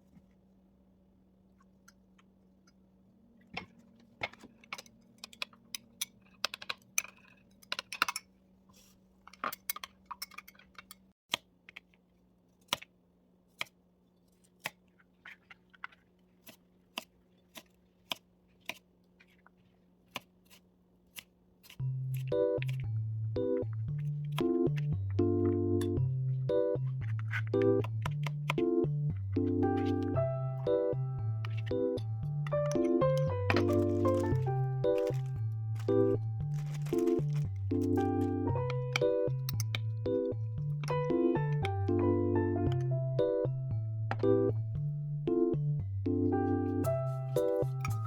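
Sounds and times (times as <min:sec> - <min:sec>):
music: 0:21.8 - 0:48.0.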